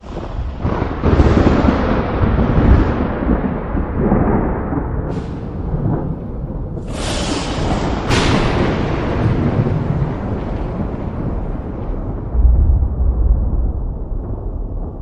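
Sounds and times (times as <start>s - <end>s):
rolling thunder rumble: 0.0s - 15.0s
brief hiss: 6.9s - 8.6s.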